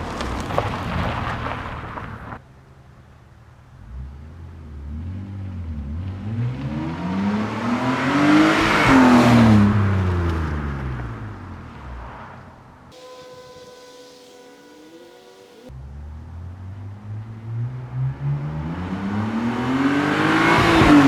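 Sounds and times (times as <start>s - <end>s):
car exhaust note: 12.9s - 15.7s.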